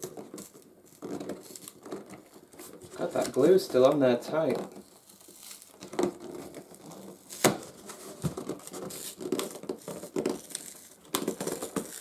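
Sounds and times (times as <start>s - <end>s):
cardboard box being torn apart: 0.0s - 1.8s, 4.7s - 12.0s
sharp crack of cardboard: 0.0s - 12.0s.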